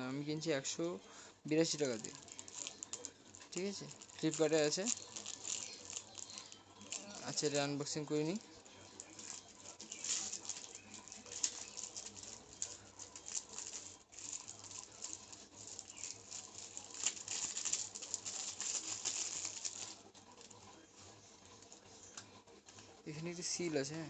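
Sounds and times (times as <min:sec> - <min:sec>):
hands rustling a small box: 0:01.7 - 0:20.7.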